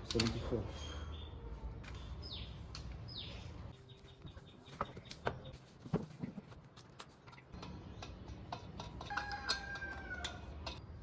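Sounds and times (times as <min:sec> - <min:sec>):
hand tools clicking and knocking: 0:04.8 - 0:11.0.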